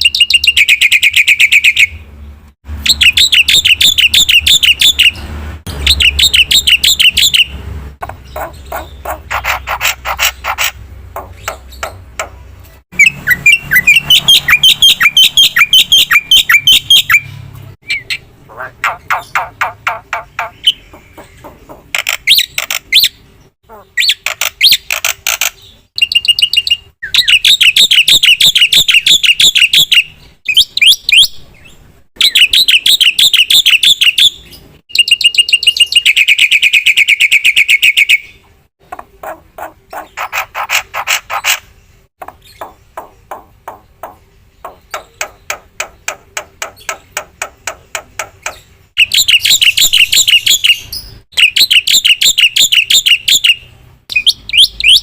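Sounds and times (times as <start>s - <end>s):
bird singing trills: 0.0s - 2.1s, 2.8s - 12.4s, 13.0s - 41.6s, 42.2s - 55.0s
bird ticking notes: 2.9s - 23.2s, 38.8s - 55.0s.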